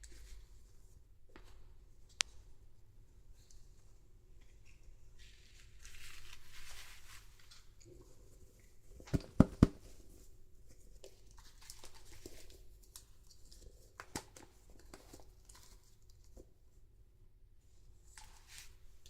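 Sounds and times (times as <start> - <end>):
plastic packaging rustling: 5.2 - 7.8.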